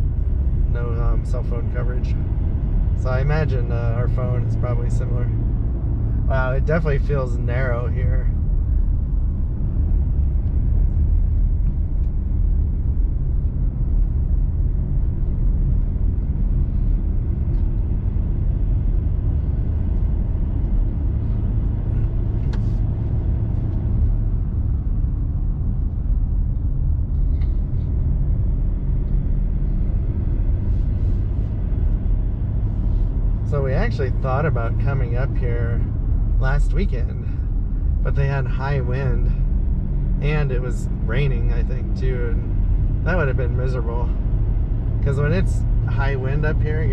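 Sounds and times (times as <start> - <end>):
vehicle engine and tyre rumble: 0.0 - 46.9.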